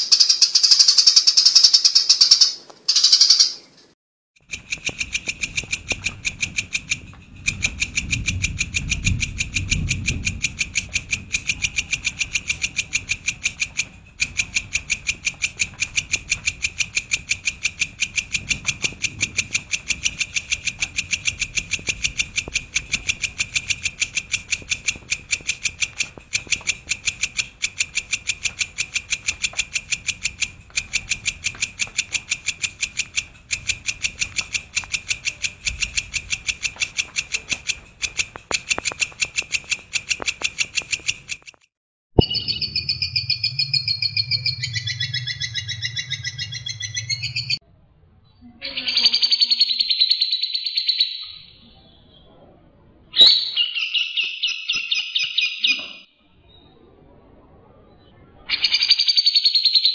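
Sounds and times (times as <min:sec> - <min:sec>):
low rumble: 0:06.0 - 0:14.8, 0:42.2 - 0:48.2.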